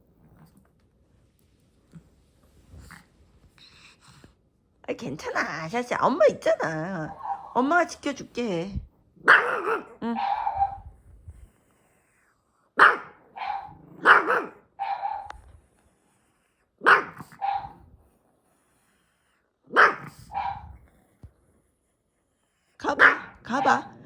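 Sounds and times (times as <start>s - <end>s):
small dog barking: 9.2s - 10.8s, 12.8s - 15.4s, 16.8s - 17.8s, 19.7s - 20.8s, 23.0s - 24.0s.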